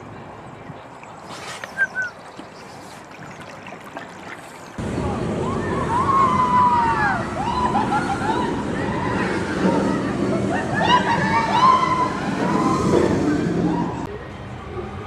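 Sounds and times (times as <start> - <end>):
water sloshing around boat: 0.0 - 4.8
squeaky glides: 0.9 - 4.8.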